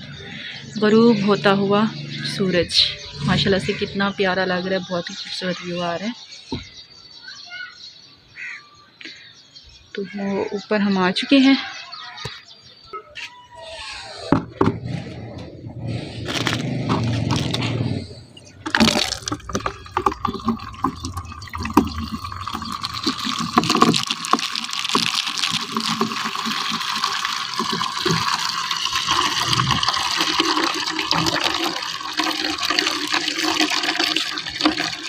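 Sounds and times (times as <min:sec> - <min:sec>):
water running from a tap: 0:18.6 - 0:35.0.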